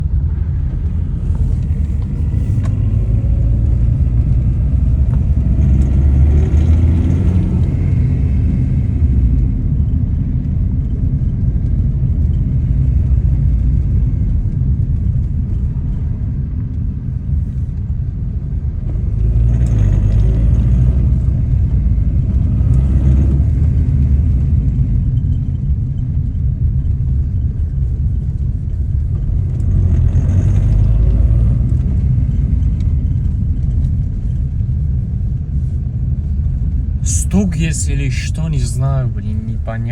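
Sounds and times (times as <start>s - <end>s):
car engine revving: 0.6s - 8.9s.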